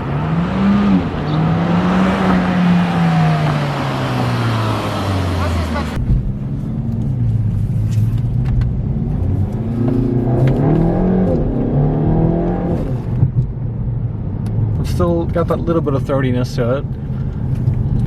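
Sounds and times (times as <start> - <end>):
car exhaust under acceleration: 0.0 - 18.0.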